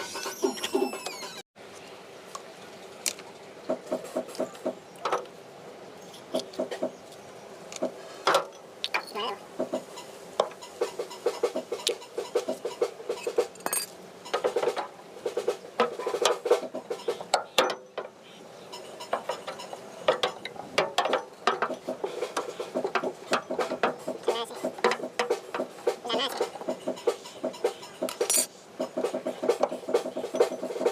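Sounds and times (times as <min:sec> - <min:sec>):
metal parts clinking and clattering: 0:13.2 - 0:14.0, 0:28.1 - 0:28.5.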